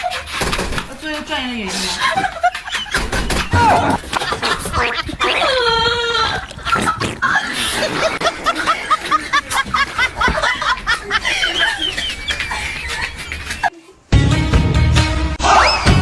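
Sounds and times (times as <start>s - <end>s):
wavering wailing voice: 8.1s - 15.9s.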